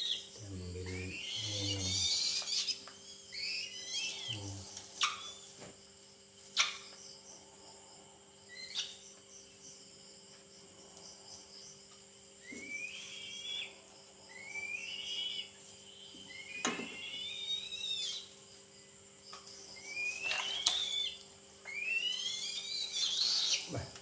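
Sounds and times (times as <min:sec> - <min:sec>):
faint insect chirping: 0:00.0 - 0:24.0
young eagle whistled begging calls: 0:16.3 - 0:18.3, 0:19.8 - 0:23.7.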